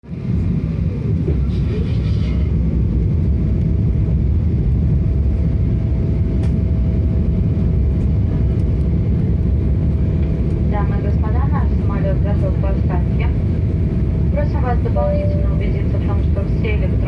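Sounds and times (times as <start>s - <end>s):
aircraft engine and airflow roar: 0.0s - 17.0s
faint constant whine: 10.7s - 17.0s.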